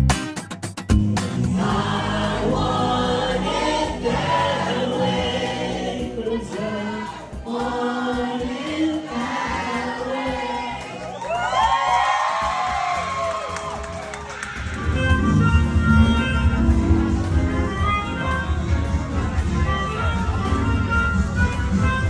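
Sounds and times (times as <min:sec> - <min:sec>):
choir singing held phrases: 0:01.4 - 0:11.5.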